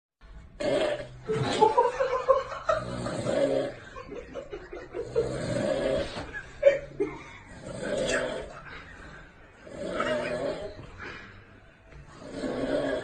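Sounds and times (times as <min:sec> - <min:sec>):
snorting sounds: 0:00.4 - 0:01.9, 0:02.6 - 0:04.2, 0:04.8 - 0:13.0
person snoring: 0:00.6 - 0:01.7, 0:02.7 - 0:04.1, 0:04.9 - 0:11.2, 0:12.1 - 0:13.0.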